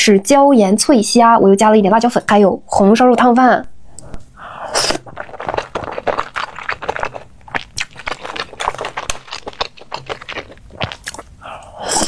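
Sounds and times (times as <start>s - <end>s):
person chewing and crunching food: 4.0s - 12.0s.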